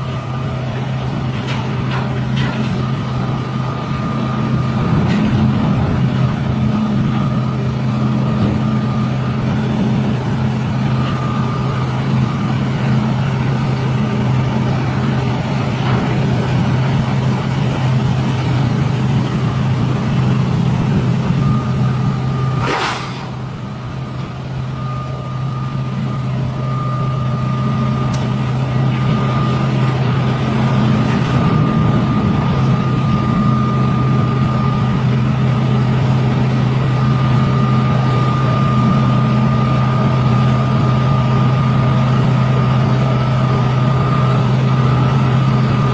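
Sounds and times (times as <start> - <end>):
diesel engine running: 0.0 - 45.9
hydraulic whine: 0.0 - 45.9
short sharp hiss: 22.6 - 23.3.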